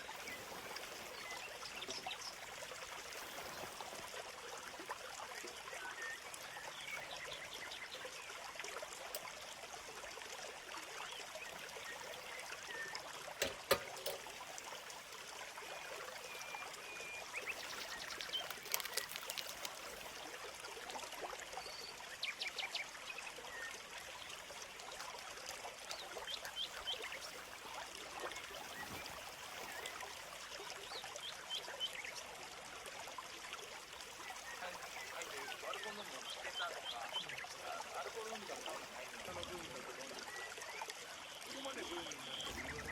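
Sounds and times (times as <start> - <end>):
small birds chirping: 0.0 - 4.1, 5.5 - 9.4, 11.0 - 13.4, 14.0 - 20.4, 25.7 - 32.2, 33.9 - 39.0
stream babbling: 0.0 - 42.9.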